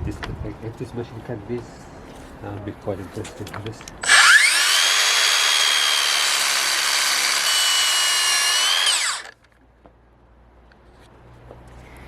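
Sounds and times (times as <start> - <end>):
mitre saw whining: 4.0 - 9.4.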